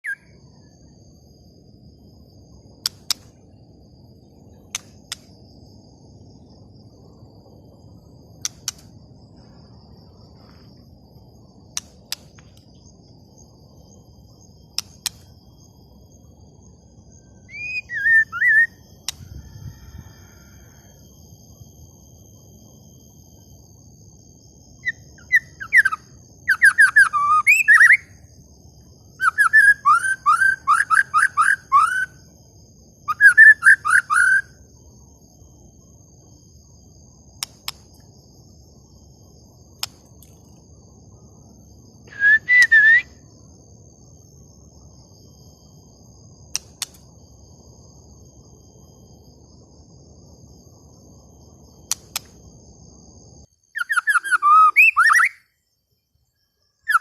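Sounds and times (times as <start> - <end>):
bird whistled chirps: 0.0 - 0.4, 17.4 - 18.8, 24.8 - 28.2, 29.2 - 32.2, 33.0 - 34.6, 42.0 - 43.2, 53.7 - 55.5.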